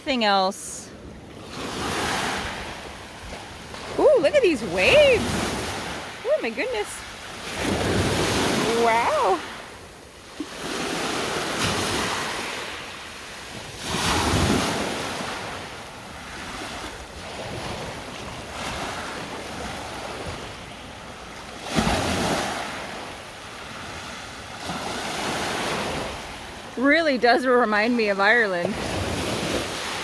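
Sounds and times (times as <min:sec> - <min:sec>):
waves breaking on shore: 0:00.0 - 0:30.0.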